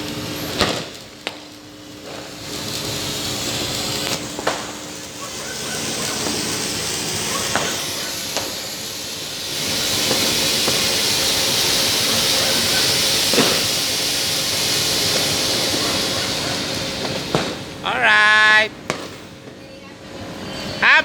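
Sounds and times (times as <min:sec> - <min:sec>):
fireworks hissing: 0:00.0 - 0:21.0.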